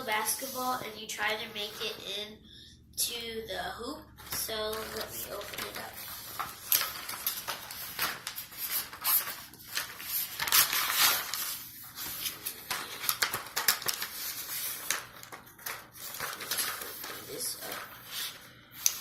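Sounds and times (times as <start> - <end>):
toy packaging crinkling: 4.2 - 18.1.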